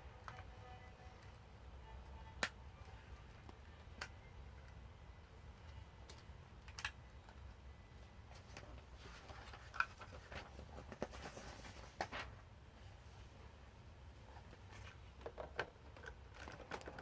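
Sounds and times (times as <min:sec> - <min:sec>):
plastic bricks clicking together: 0:15.2 - 0:17.0.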